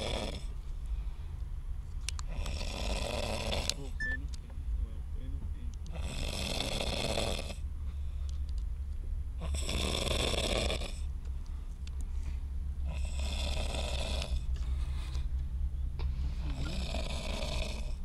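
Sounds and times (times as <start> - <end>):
man snoring heavily: 0.0 - 0.5, 2.3 - 3.8, 5.9 - 7.6, 9.4 - 11.1, 12.8 - 14.5, 16.4 - 18.0.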